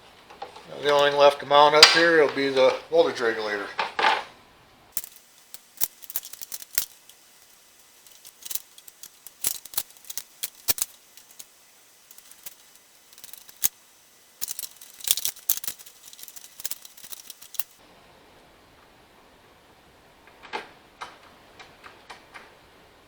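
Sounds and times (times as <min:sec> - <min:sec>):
metallic clicks of hand tools: 0:04.9 - 0:17.8.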